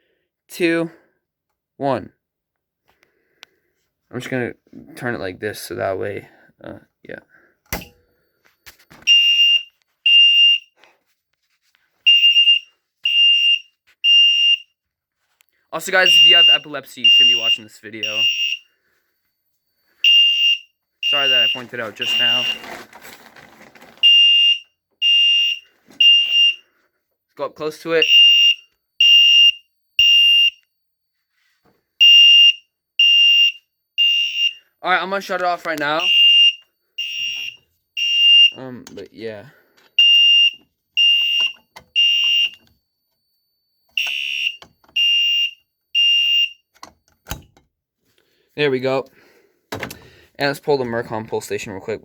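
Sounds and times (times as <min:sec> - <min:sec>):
fire alarm horn beeping: 0:09.1 - 0:10.8, 0:12.1 - 0:14.7, 0:15.8 - 0:19.0, 0:19.9 - 0:22.8, 0:24.0 - 0:26.8, 0:27.4 - 0:30.7, 0:32.0 - 0:38.7, 0:40.0 - 0:42.7, 0:43.9 - 0:46.8.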